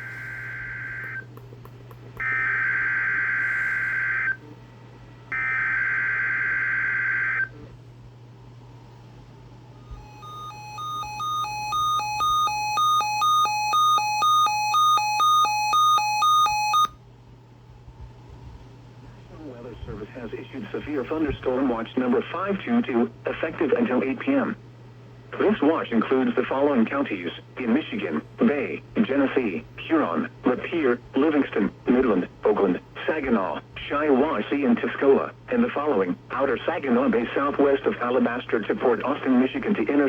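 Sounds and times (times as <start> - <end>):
screeching data-tone bursts: 10.0 - 16.9.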